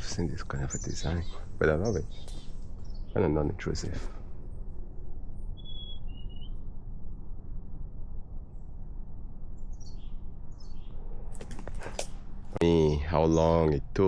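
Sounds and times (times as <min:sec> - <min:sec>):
low rumble: 0:00.0 - 0:14.0
bird whistling and chirping: 0:05.6 - 0:06.6.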